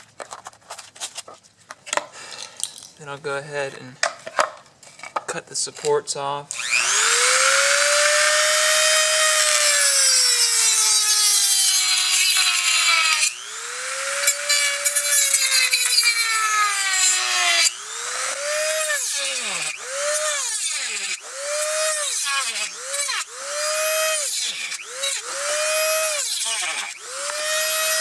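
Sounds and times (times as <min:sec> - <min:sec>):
rotary tool whining: 0:06.5 - 0:28.0.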